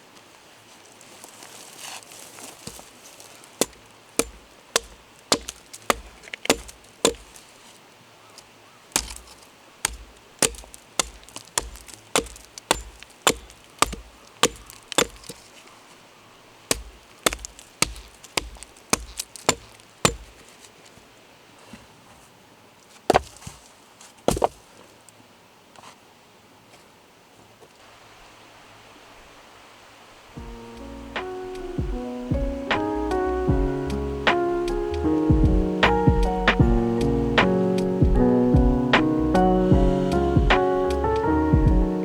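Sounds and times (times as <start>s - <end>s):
firewood being chopped: 2.2s - 7.4s, 8.9s - 15.5s, 16.7s - 20.4s, 23.1s - 23.5s, 24.3s - 24.6s, 31.2s - 41.9s.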